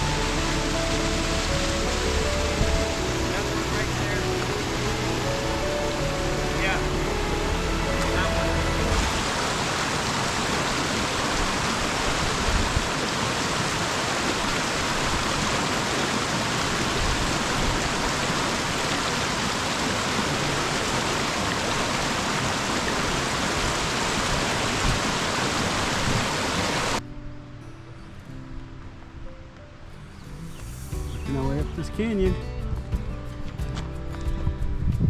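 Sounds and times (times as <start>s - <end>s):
rushing whitewater: 0.0s - 27.0s.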